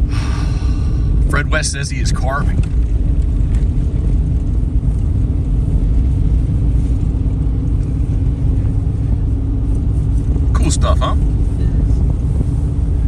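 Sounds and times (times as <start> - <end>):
constant hum: 0.0 - 13.0
road and engine rumble in car: 0.0 - 13.0.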